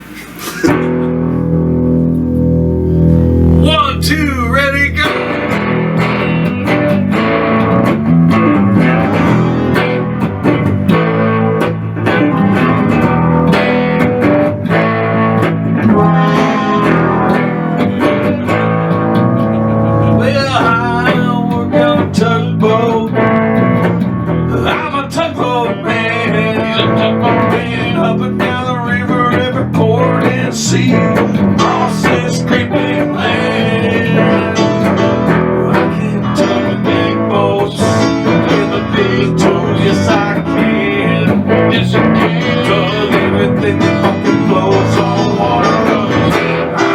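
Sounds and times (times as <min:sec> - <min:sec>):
guitar-led instrumental music: 0:00.0 - 0:46.9.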